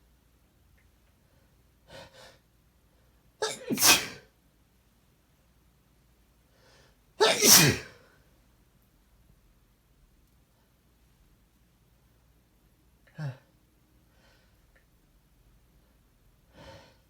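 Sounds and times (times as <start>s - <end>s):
person sneezing: 3.4s - 4.2s, 7.2s - 8.0s.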